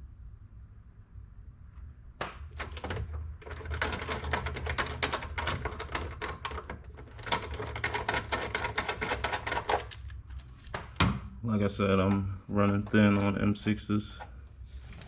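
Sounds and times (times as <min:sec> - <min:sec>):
rapid mechanical clicking: 0:02.6 - 0:10.4.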